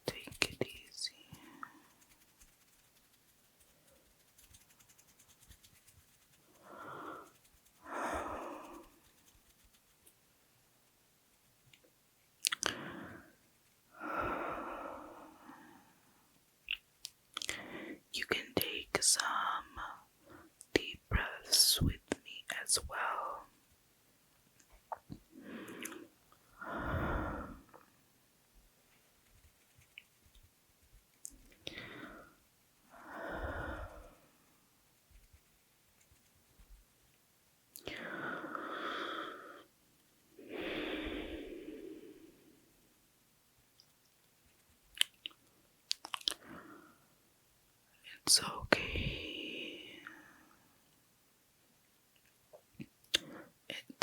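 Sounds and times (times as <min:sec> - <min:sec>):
heavy breathing: 0:06.6 - 0:09.0, 0:40.4 - 0:42.5
person breathing deeply: 0:06.6 - 0:09.0, 0:12.6 - 0:16.0, 0:25.4 - 0:27.8, 0:31.6 - 0:34.4, 0:37.8 - 0:39.7, 0:40.4 - 0:42.6
faint mouth clicks: 0:12.4 - 0:12.8, 0:44.9 - 0:46.4, 0:52.8 - 0:53.3.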